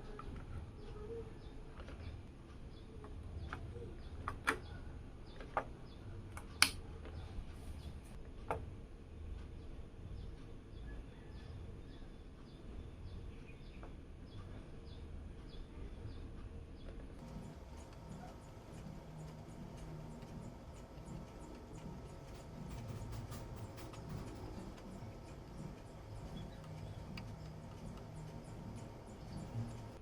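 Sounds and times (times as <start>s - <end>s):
sharp clicks and knocks: 17.2s - 30.0s.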